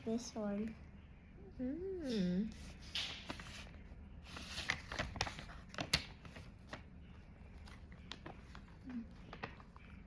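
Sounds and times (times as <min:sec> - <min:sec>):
paper rustling: 0:02.5 - 0:10.0.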